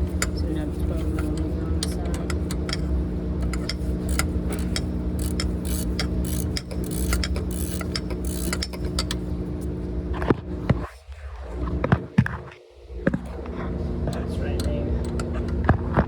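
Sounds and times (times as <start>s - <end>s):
steady low hum: 0.0s - 16.0s
ratchet wrench clicking: 1.2s - 9.3s.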